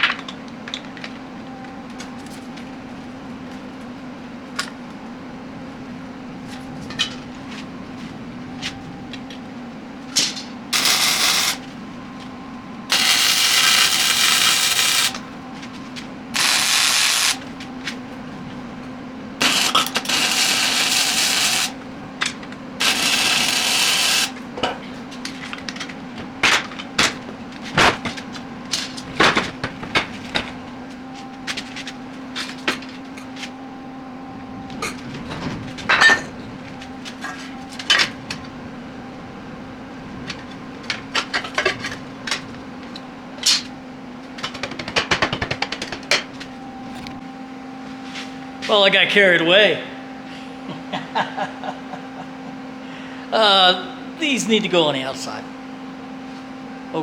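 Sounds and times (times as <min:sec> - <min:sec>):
low machine hum: 0:00.0 - 0:57.0
welding crackling: 0:10.2 - 0:11.7, 0:12.9 - 0:15.3, 0:16.4 - 0:18.0, 0:19.4 - 0:24.4.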